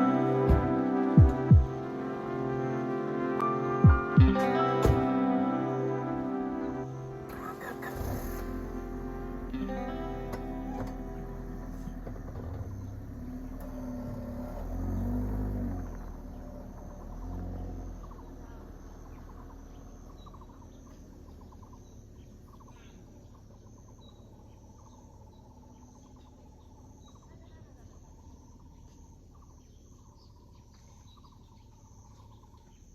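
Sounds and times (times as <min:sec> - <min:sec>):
insects chirring: 0:04.5 - 0:32.9
bird calls: 0:10.6 - 0:32.9.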